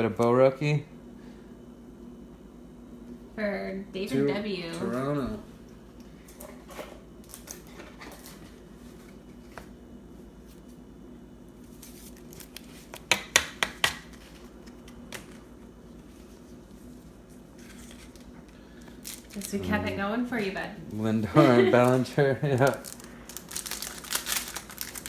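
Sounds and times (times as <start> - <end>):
cards rustling: 11.6 - 13.2, 21.7 - 25.0.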